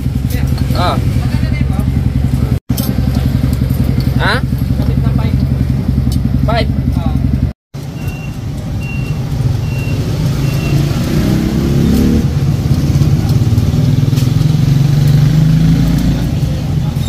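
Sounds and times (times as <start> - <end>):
vehicle engine running: 0.0 - 17.0
short high beeps: 8.0 - 10.9.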